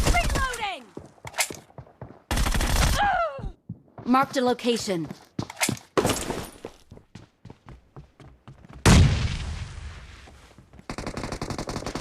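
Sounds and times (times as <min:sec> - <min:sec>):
rapid automatic fire: 0:10.9 - 0:12.0.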